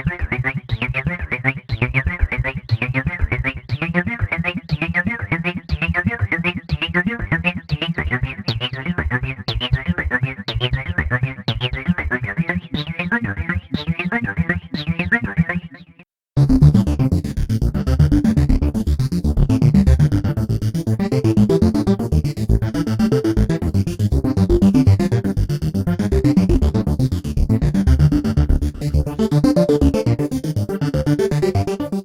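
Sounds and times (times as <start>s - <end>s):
dense electronic pattern: 16.4s - 32.0s
synthesizer plucky notes: 16.4s - 32.0s.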